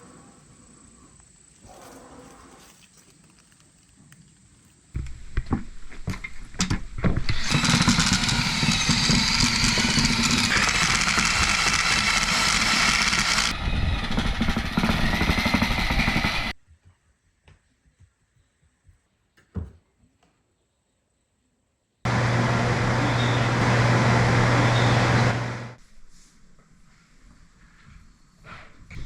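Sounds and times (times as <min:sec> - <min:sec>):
loud power tool running: 0:07.2 - 0:16.6, 0:22.1 - 0:25.8.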